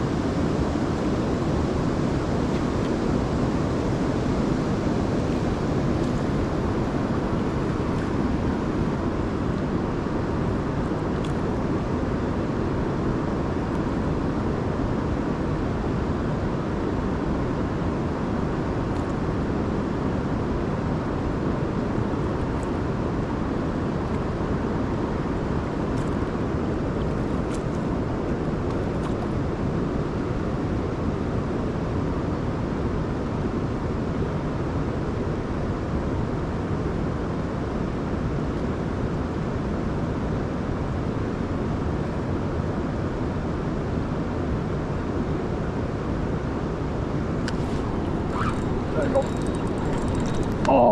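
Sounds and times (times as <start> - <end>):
river current rushing: 47.2 - 50.9.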